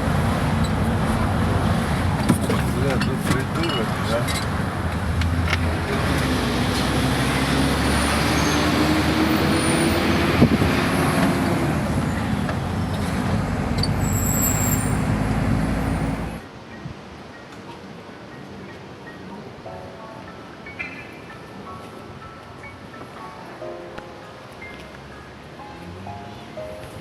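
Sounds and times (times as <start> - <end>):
vehicle engine running: 0.0 - 14.2
road noise: 0.0 - 27.0.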